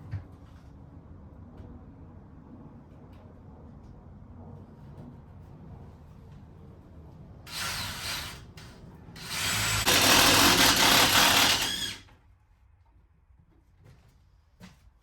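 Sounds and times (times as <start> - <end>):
handheld power tool running: 7.5 - 12.0.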